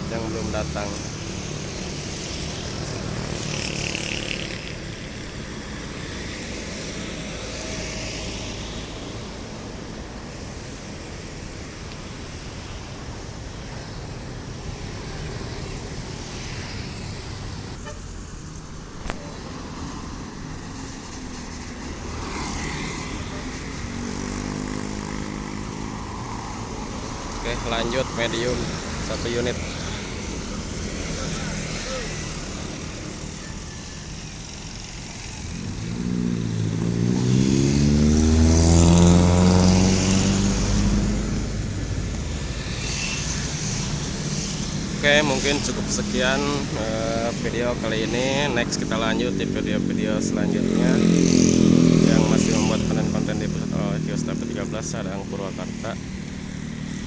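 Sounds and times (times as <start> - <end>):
road traffic driving past: 0.0 - 57.0
vehicle horn toots: 17.8 - 18.1.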